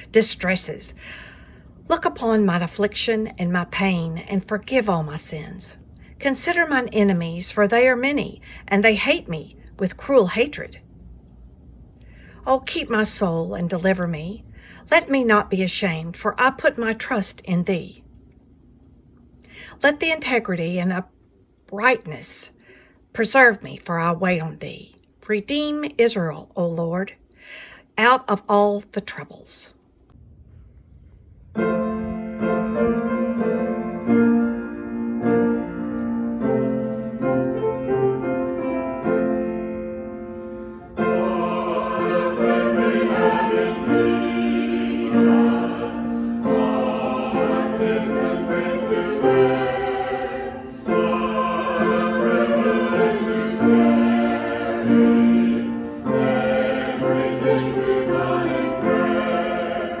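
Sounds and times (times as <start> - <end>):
keyboard accompaniment: 31.6 - 60.0
choir singing a hymn: 32.4 - 38.0, 40.4 - 60.0.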